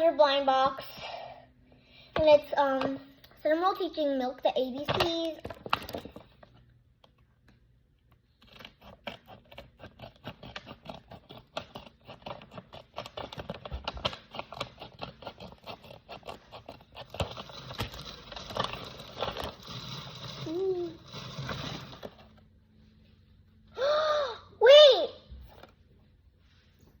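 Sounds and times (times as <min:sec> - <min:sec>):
packaging crackling and rustling: 0:04.8 - 0:06.6, 0:08.4 - 0:22.4.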